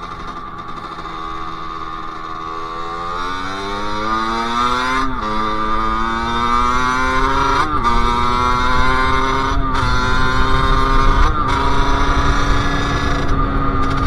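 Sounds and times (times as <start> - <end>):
two-stroke engine accelerating: 0.0 - 14.0.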